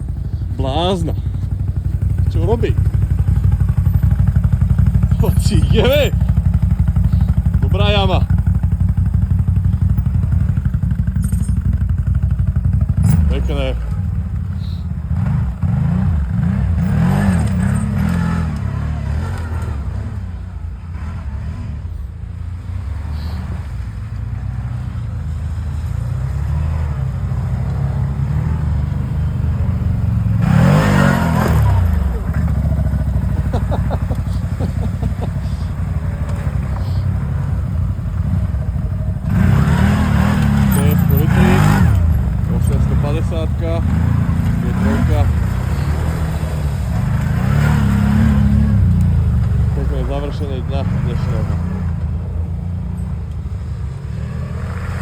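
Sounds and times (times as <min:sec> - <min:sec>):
quad bike engine revving: 0:00.0 - 0:55.0.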